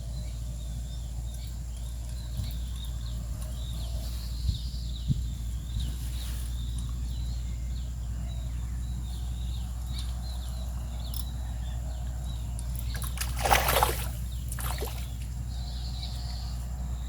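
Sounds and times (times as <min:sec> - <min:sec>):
small birds chirping: 0:00.0 - 0:17.0
water splashing: 0:12.8 - 0:15.3.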